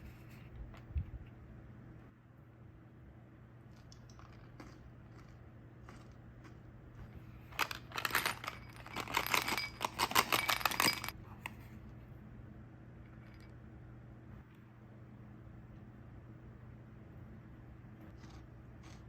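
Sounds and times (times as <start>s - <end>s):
chocolates rattling in container: 3.7s - 6.2s, 7.5s - 11.2s.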